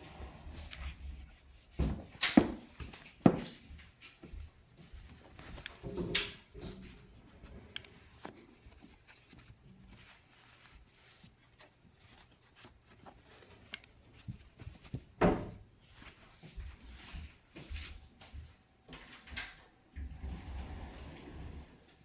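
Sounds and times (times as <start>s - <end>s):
cats knocking and rustling: 0.1s - 8.9s.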